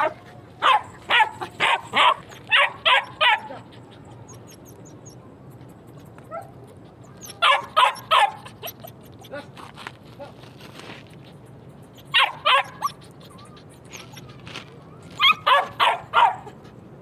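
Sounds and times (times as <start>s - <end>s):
dog barking: 0.0s - 3.5s, 7.4s - 8.4s, 12.2s - 12.8s, 15.4s - 16.5s.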